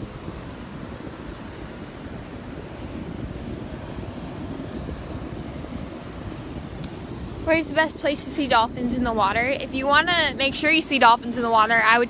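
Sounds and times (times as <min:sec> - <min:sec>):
rough surf rushing: 0:00.0 - 0:12.0
wind buffeting microphone: 0:00.0 - 0:12.0.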